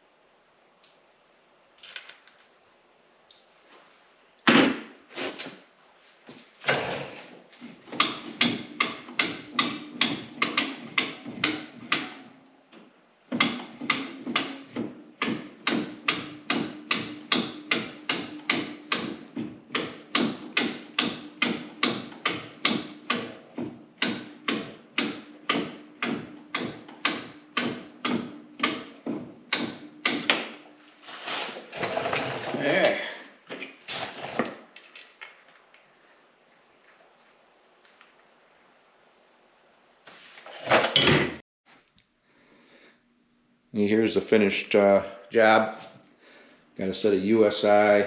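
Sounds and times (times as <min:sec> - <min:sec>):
sharp metallic knocks: 0:08.0 - 0:12.3, 0:13.4 - 0:30.6.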